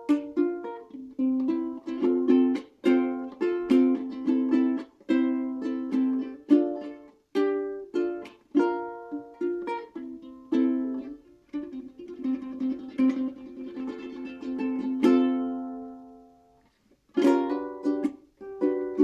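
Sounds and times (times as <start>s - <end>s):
ukulele picked notes and chords: 0.0s - 19.0s
ukulele strummed chords: 0.0s - 19.0s.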